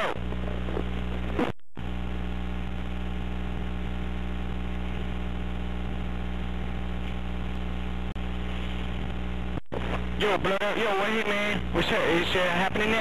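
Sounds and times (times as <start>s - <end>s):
telephone line electrical hum: 0.0s - 13.0s.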